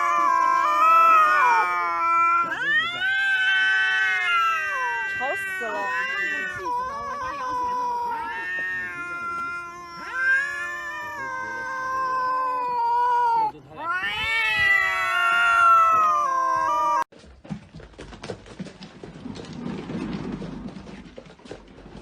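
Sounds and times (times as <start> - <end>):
cat yowling: 0.0 - 17.1.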